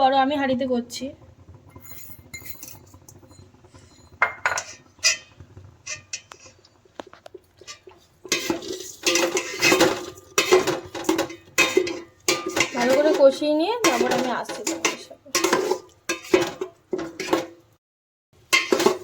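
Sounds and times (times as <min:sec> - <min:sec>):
spatula scraping cooking pot: 0:03.7 - 0:17.6, 0:18.4 - 0:19.0.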